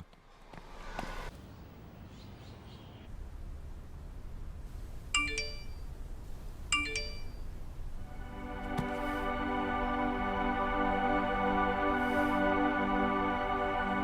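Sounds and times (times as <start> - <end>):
faint low background rumble: 0.0 - 14.0
multi-note chime: 6.8 - 7.4.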